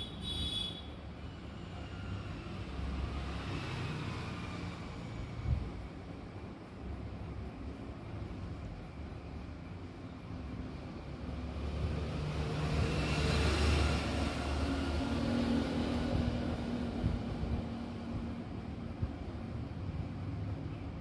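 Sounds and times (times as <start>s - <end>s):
motor vehicle passing by: 1.8s - 5.8s, 11.2s - 18.2s.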